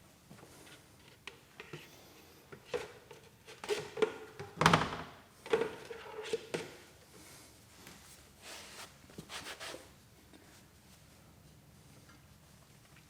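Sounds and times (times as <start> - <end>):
rustling of handled things: 5.4 - 13.0.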